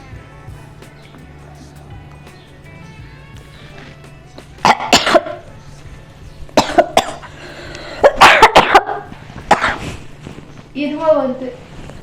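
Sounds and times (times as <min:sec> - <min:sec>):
person coughing harshly: 0:04.6 - 0:05.4, 0:06.6 - 0:07.3, 0:08.0 - 0:09.9.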